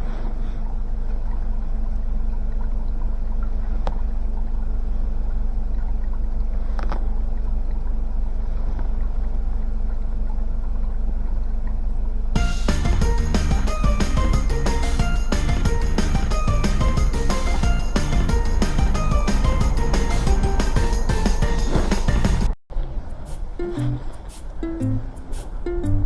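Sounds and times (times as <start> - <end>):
steady low rumble: 0.0 - 26.0.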